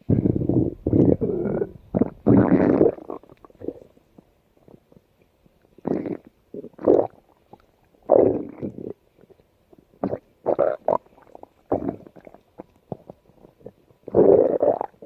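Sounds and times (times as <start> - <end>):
stomach growling: 0.0 - 15.0.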